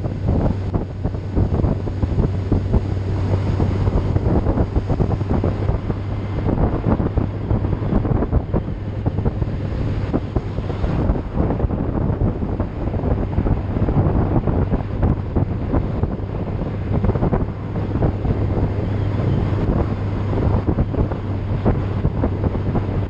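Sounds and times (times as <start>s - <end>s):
low engine drone: 0.0s - 23.0s
wind buffeting microphone: 0.0s - 23.0s.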